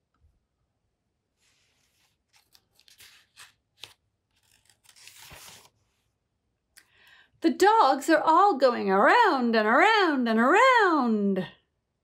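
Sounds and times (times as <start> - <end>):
paper pages being turned: 1.4 - 6.1.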